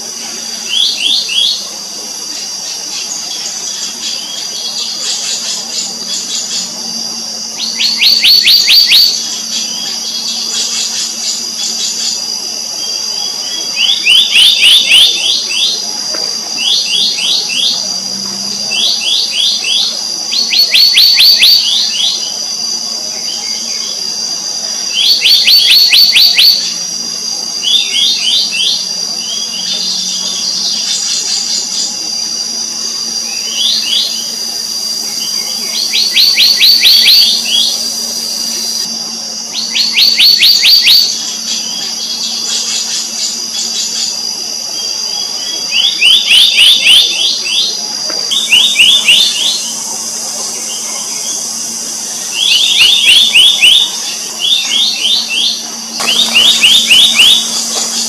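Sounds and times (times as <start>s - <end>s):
steady high-pitched drone: 0.0s - 58.0s
birds calling in quick high notes: 50.6s - 58.0s.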